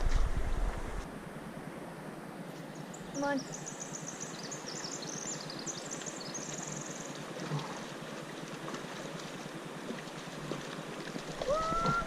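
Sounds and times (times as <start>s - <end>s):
river water rushing: 1.2s - 12.0s
small bird chirping and trilling: 2.7s - 7.1s.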